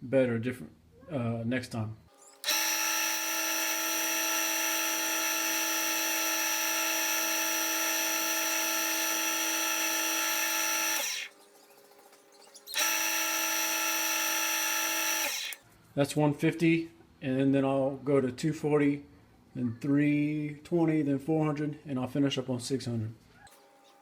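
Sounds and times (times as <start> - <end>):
wood lathe motor whining: 2.3 - 11.3, 12.6 - 15.6.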